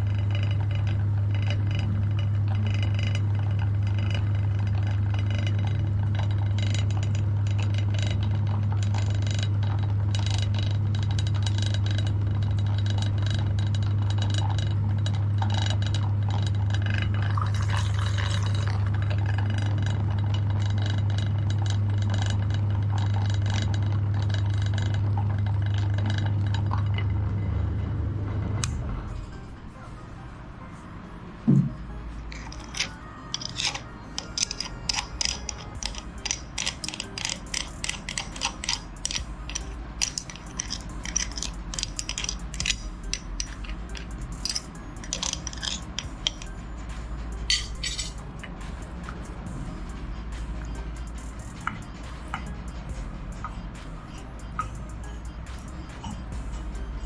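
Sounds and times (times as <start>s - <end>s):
rapid clicking and clinking: 32.3s - 57.0s.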